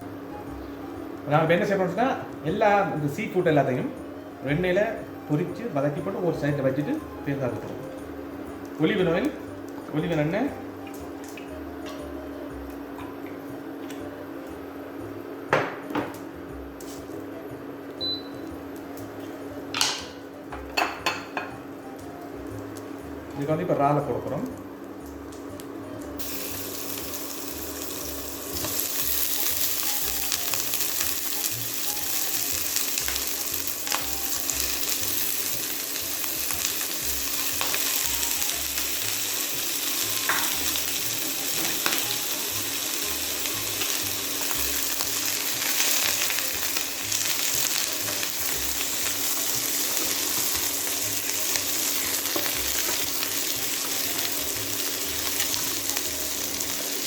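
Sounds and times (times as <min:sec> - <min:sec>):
prawns sizzling in a pan: 0:24.2 - 0:57.0.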